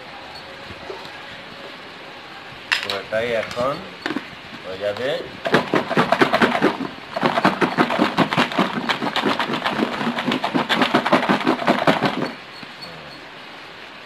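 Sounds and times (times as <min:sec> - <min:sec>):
wet mashing strokes in a bowl: 0:05.4 - 0:12.4.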